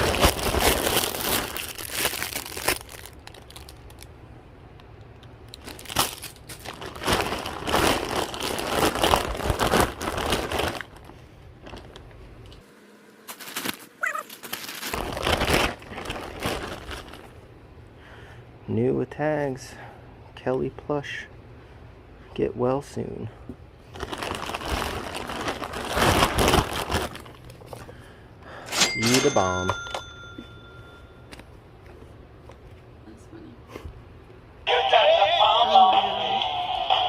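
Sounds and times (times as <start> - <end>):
bags and packaging rustling: 0.0 - 4.1, 5.5 - 12.2, 13.2 - 17.5, 23.8 - 28.1.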